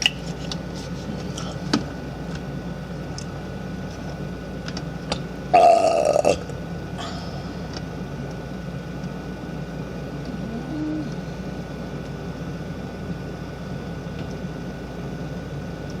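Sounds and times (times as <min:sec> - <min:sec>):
steady hum and hiss: 0:00.0 - 0:16.0
short low rising tone: 0:10.3 - 0:11.3.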